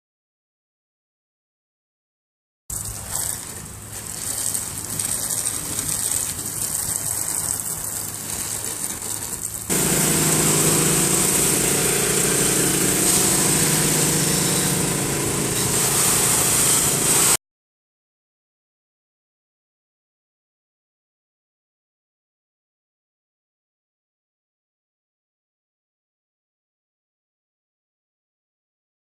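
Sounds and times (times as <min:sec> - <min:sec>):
pressure washer engine running: 0:02.7 - 0:17.4
loud high hiss: 0:04.2 - 0:17.4.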